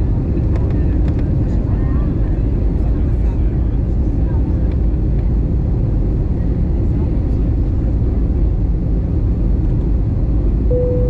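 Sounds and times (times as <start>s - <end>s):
airliner engines and rushing air: 0.0s - 11.0s
steady tone: 10.7s - 11.0s.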